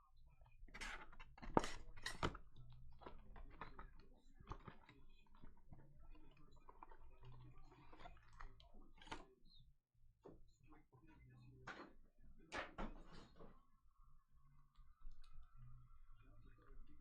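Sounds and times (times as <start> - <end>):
trading cards being handled: 0.8 - 5.6.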